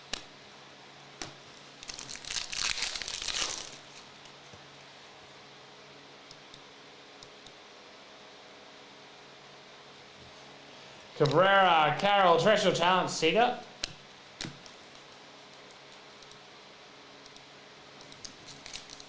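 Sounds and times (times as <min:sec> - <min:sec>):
foil wrapper tearing and crinkling: 0:01.6 - 0:04.4, 0:18.2 - 0:19.0.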